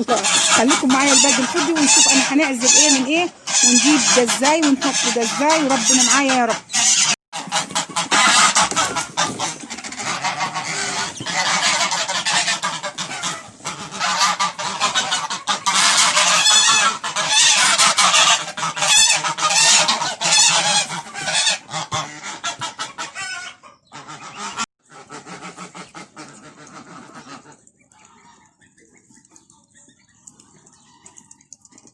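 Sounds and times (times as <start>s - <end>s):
geese honking: 0.0s - 31.2s
ducks calling: 0.0s - 31.4s.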